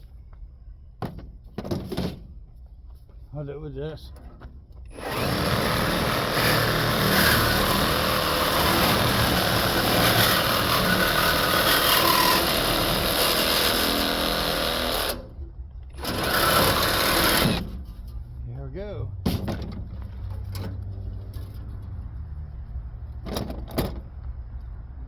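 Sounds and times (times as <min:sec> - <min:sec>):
electric power tool cutting metal: 0:04.9 - 0:15.4, 0:16.0 - 0:17.7.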